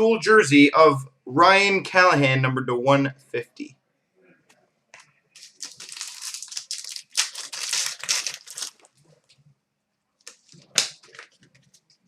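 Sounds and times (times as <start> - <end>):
cards clicking and snapping: 5.0 - 8.9, 10.3 - 11.7
foil wrapper crinkling and tearing: 5.4 - 9.0, 10.3 - 11.8.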